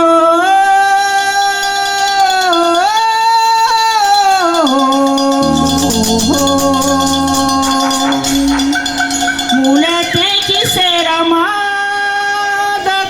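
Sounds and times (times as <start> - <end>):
person singing long notes: 5.4 - 10.4.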